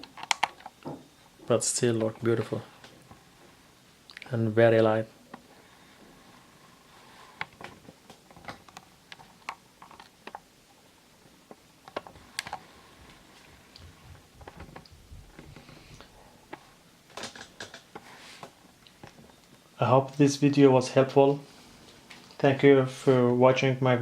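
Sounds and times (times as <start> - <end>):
objects clicking and tapping: 0.0 - 1.1.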